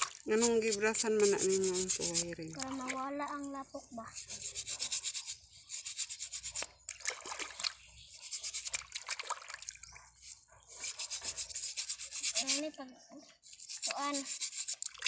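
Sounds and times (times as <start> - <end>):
stiff brush scrubbing shells: 0.0 - 2.9, 4.0 - 6.8, 7.8 - 9.2, 10.2 - 12.7, 13.4 - 15.0.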